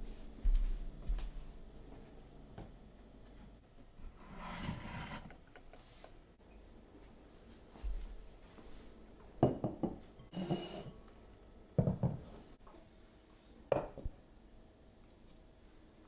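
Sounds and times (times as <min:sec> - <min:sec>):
dishes and utensils clinking: 0:09.4 - 0:11.0.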